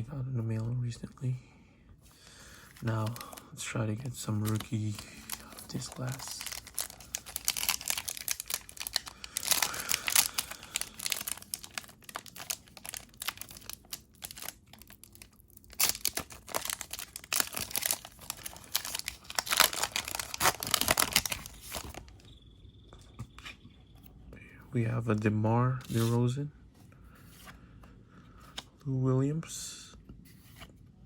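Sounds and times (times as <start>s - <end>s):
wrapper tearing and crinkling: 4.4s - 22.1s.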